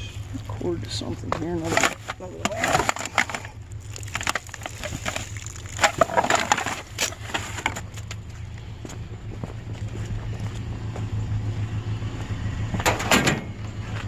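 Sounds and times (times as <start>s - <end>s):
steady low hum: 0.0s - 14.0s
junk knocking and clattering: 0.8s - 8.3s, 12.7s - 14.0s.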